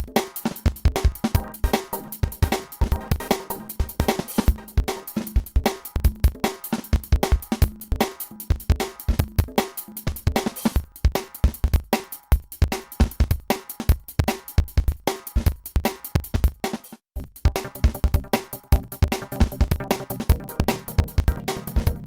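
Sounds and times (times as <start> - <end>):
music with fast drum beat: 0.0 - 22.0.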